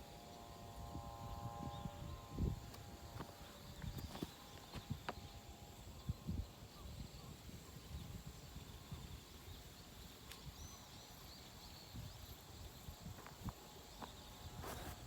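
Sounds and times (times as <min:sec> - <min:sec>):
brief rustle: 0:14.6 - 0:15.0.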